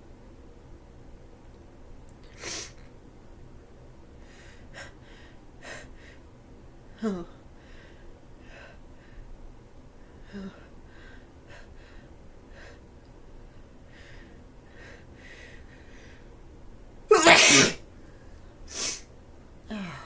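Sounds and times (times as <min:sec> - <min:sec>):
person sneezing loudly: 0:17.1 - 0:17.8.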